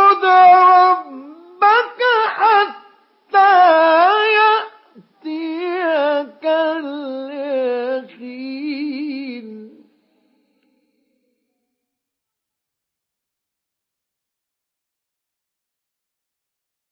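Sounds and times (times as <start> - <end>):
man chanting recitation: 0.0 - 10.0.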